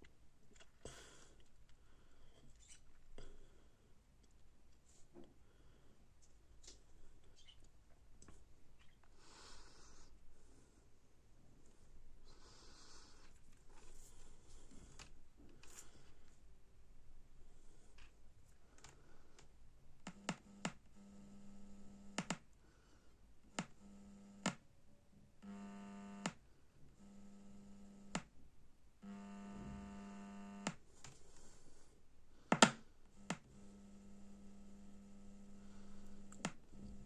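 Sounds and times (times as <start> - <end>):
speaker buzzing with low hum: 11.4 - 37.0.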